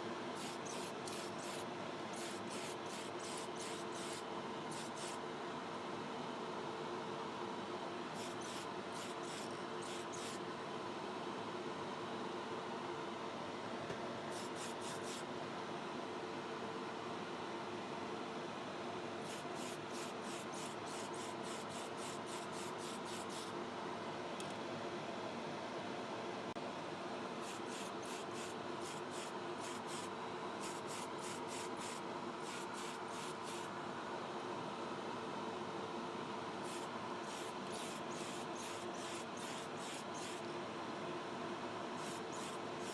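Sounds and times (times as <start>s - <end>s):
paint spray hiss: 0.4s - 1.6s, 2.2s - 5.2s, 8.2s - 10.4s, 19.2s - 23.5s, 27.4s - 33.7s, 36.6s - 40.4s, 42.0s - 42.9s
extraction fan humming: 26.6s - 34.8s, 36.2s - 42.9s.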